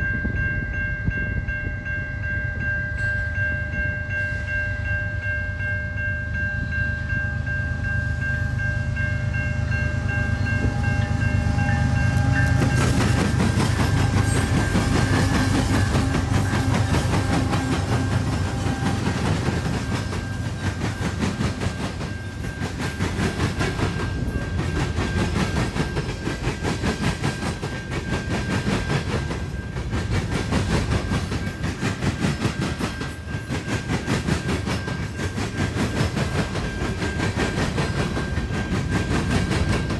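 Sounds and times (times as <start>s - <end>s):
train rumbling: 0.0s - 39.9s
steady high tones: 0.3s - 26.5s
wheels clattering over rails: 10.9s - 39.9s.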